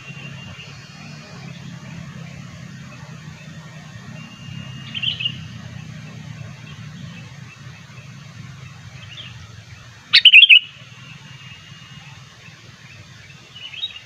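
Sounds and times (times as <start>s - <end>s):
faint bird chirps: 6.6s - 14.0s
bird chattering: 10.1s - 10.7s.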